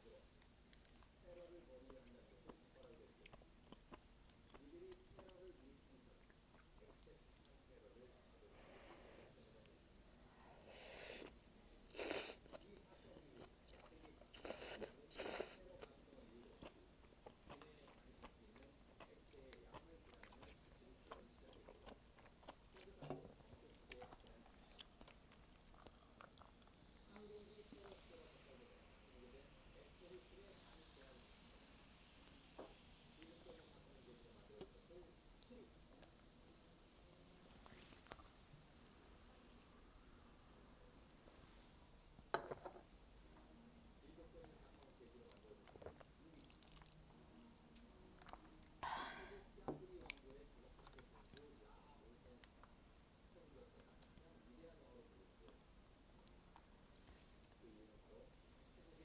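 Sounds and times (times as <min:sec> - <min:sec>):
faint chewing and biting: 0:00.0 - 0:08.0, 0:08.8 - 0:48.8, 0:49.6 - 0:59.0
soft clicks and mouth sounds: 0:00.4 - 0:07.6.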